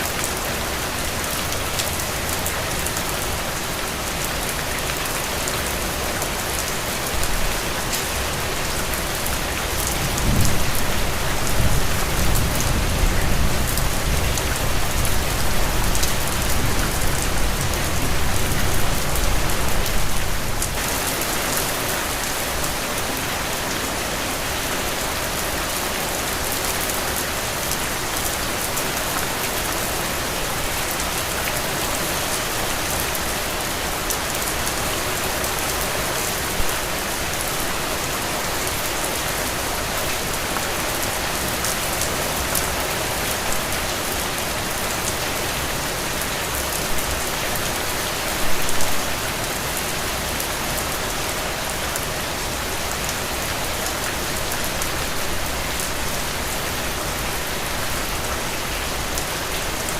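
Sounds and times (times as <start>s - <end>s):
heavy rain falling: 0.0s - 59.9s
low rumble of thunder: 10.0s - 18.9s.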